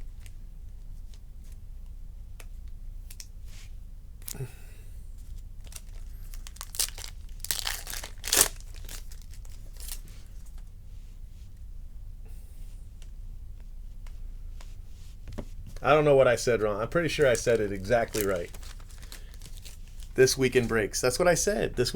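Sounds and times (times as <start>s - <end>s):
packaging tearing and crinkling: 5.6s - 10.2s, 17.1s - 20.2s.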